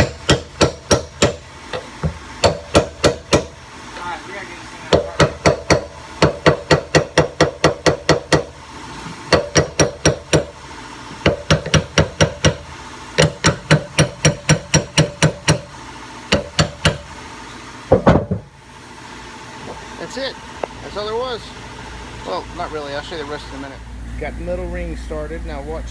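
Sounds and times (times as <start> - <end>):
hammer striking metal: 0.0 - 3.5, 4.9 - 8.5, 9.3 - 10.5, 11.2 - 12.6, 13.2 - 15.7.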